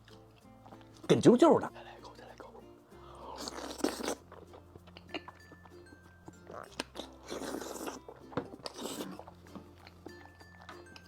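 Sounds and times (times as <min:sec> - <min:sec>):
soft background music: 0:00.0 - 0:11.0
chewing and biting noodles: 0:03.0 - 0:11.0.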